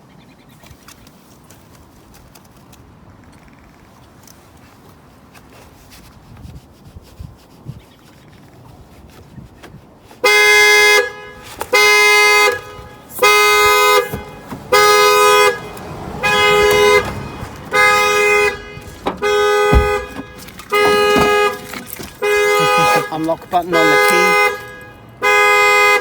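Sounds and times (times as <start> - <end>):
car alarm horn blasts: 10.2 - 26.0.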